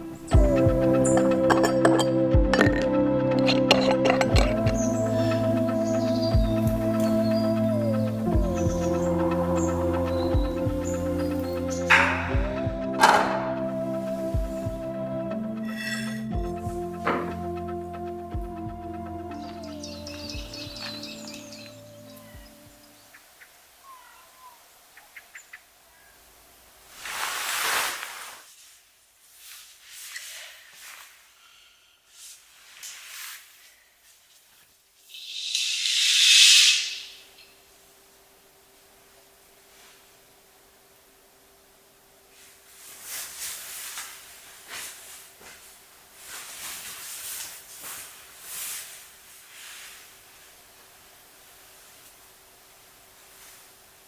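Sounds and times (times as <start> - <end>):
bird chirps: 0.0 - 14.7, 18.9 - 23.2, 35.2 - 37.5.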